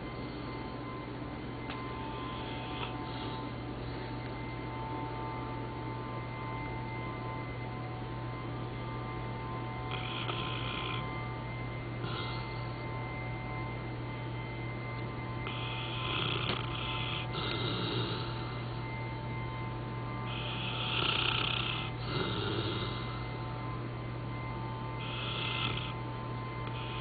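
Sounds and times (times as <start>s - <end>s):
lawn mower drone: 0.0s - 27.0s
dog snoring: 1.7s - 4.7s, 9.7s - 11.4s, 12.0s - 12.9s, 15.4s - 18.9s, 20.2s - 23.4s, 24.9s - 26.0s, 26.6s - 27.0s.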